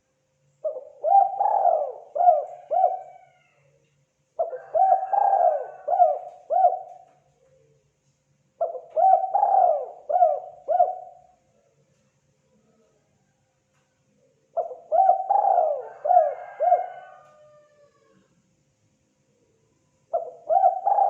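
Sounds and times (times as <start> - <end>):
dove cooing: 0.6 - 3.5, 4.4 - 7.8, 8.6 - 11.4, 14.5 - 18.2, 20.1 - 21.0.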